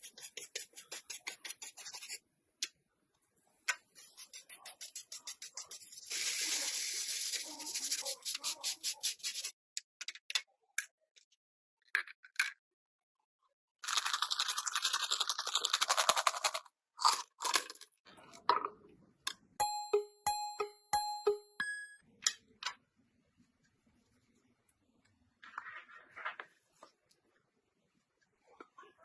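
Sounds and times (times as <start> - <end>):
bright ringing tones: 19.6 - 22.0.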